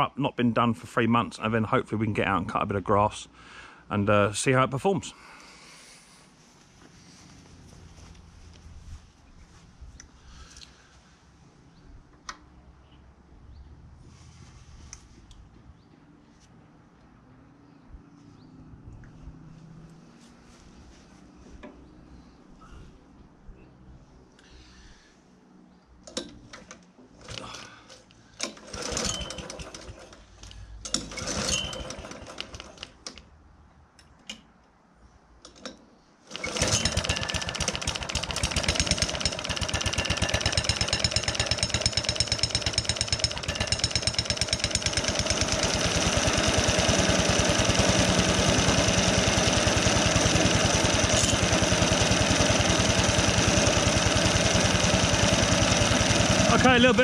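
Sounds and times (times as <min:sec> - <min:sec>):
mower engine cranking and running: 0:26.1 - 0:33.2, 0:35.5 - 0:57.0.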